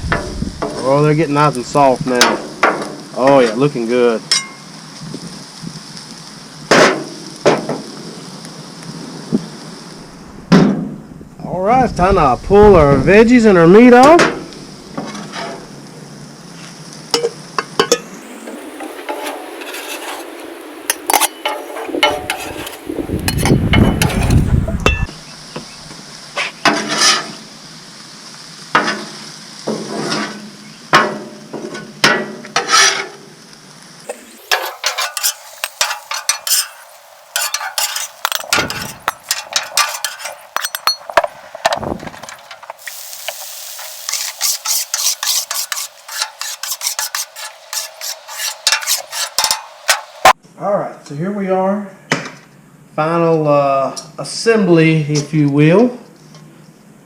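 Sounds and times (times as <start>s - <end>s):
food sizzling: 0.0s - 50.4s
low rumble: 9.8s - 15.0s
metal spatulas scraping on griddle: 15.0s - 15.6s, 17.9s - 25.1s, 26.6s - 27.4s, 29.7s - 30.4s, 32.1s - 33.2s, 34.1s - 41.3s, 42.2s - 50.4s.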